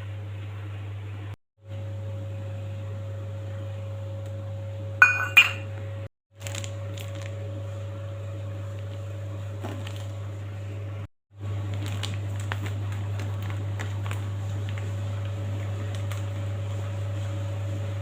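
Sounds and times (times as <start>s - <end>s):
steady low hum: 0.0s - 6.1s
utensil clinking on a dish: 5.0s - 5.7s.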